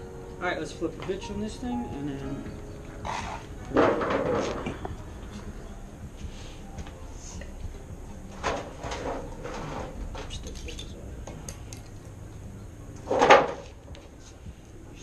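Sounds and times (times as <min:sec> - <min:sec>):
loud metal clunk: 0:03.7 - 0:04.8, 0:13.1 - 0:13.6
metal parts clinking: 0:10.2 - 0:12.1.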